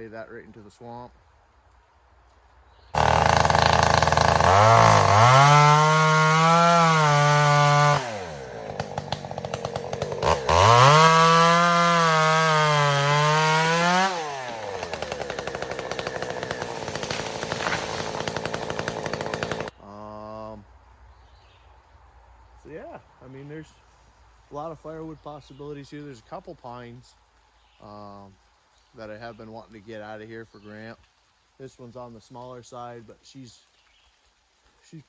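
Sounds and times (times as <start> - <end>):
chainsaw rattling idle: 3.0 - 19.7
chainsaw revving: 3.0 - 19.8.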